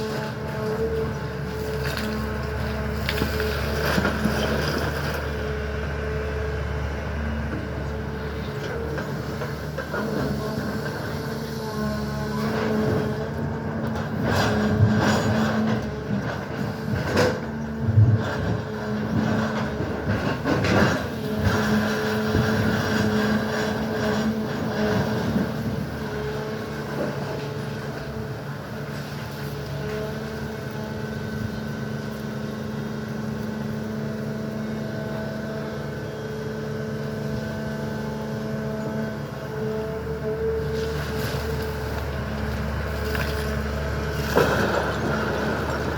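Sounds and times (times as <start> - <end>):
excavator bucket clanking and scraping: 0.0 - 6.1, 7.4 - 45.9
excavator diesel engine running: 0.0 - 45.9.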